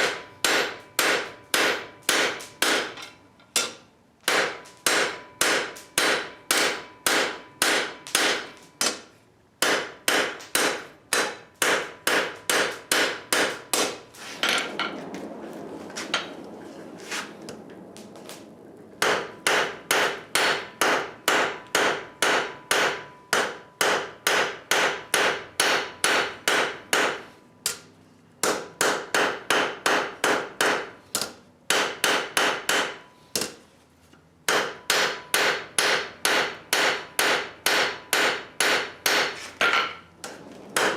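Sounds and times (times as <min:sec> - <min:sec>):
hammer striking steel on anvil: 0:00.0 - 0:14.0, 0:19.0 - 0:33.6, 0:34.5 - 0:40.9
rushing noise: 0:14.2 - 0:21.3.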